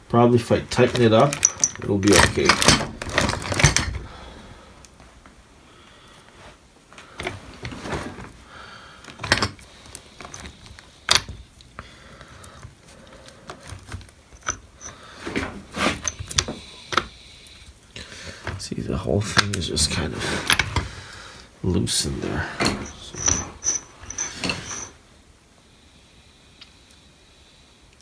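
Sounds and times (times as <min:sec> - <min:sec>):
metal gear clicks and knocks: 0:00.6 - 0:04.1.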